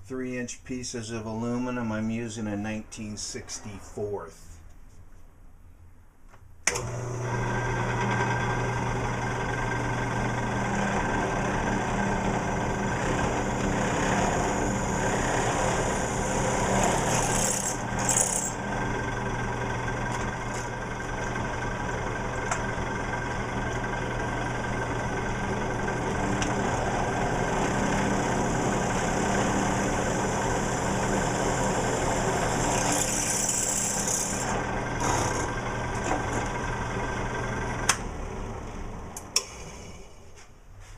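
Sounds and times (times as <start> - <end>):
electric drill motor hum: 6.7 - 38.0
drill bit cutting aluminum hiss: 28.2 - 34.5.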